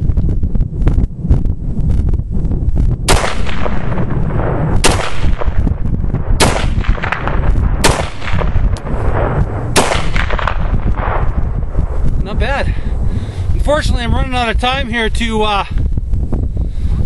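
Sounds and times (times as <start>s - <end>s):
wind buffeting microphone: 0.0s - 17.0s
rifle shots echoing: 3.1s - 11.5s.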